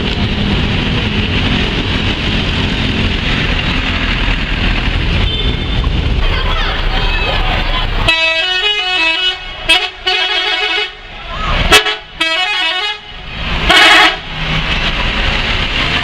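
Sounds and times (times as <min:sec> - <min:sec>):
bus musical horn: 0:05.2 - 0:05.8, 0:08.0 - 0:14.4.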